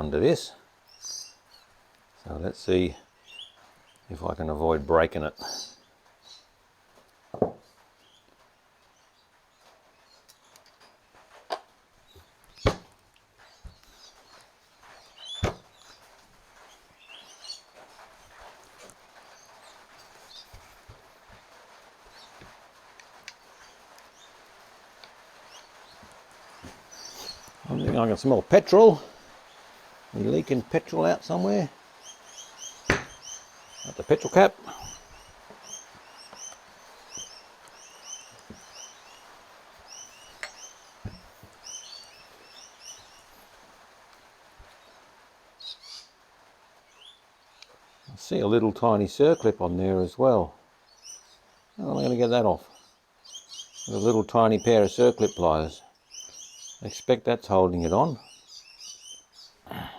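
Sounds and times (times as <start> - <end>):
birds chirping: 0.0 - 59.9
soft knocks: 7.3 - 7.7, 32.9 - 33.2.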